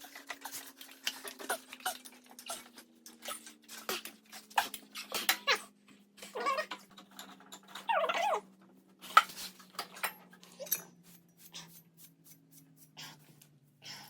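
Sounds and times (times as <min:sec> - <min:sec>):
dog whining: 0:05.3 - 0:06.8, 0:07.7 - 0:08.5
light metallic clicks and clinks: 0:09.8 - 0:11.0.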